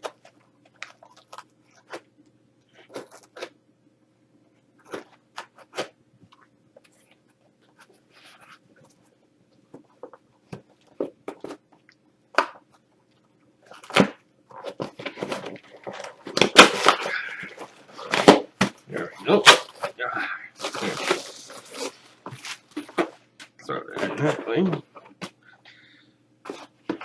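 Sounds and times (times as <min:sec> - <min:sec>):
cardboard tearing and rustling: 0:13.7 - 0:20.0, 0:20.6 - 0:23.1
box cutter slicing packing tape: 0:16.4 - 0:17.0.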